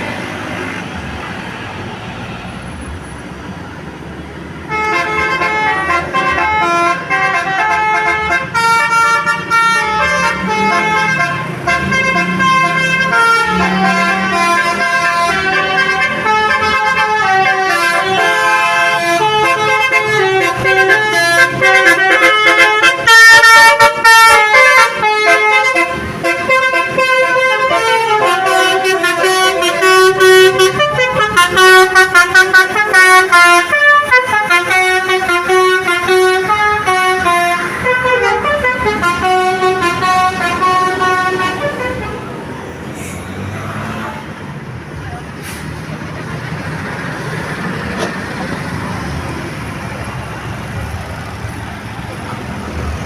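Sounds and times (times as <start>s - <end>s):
multi-tone air horn tune: 4.7s - 42.2s.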